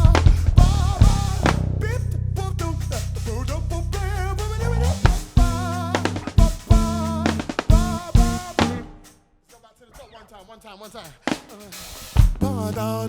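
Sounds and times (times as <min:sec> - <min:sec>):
drums and bass stop hits: 0:00.0 - 0:02.0, 0:04.8 - 0:09.1
wavering vocal line: 0:00.0 - 0:08.9, 0:12.4 - 0:13.0.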